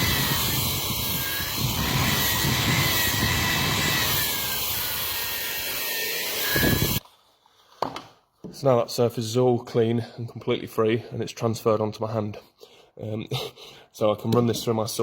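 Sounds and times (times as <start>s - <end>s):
electric burnishing tool scrubbing wood: 0.0s - 7.0s.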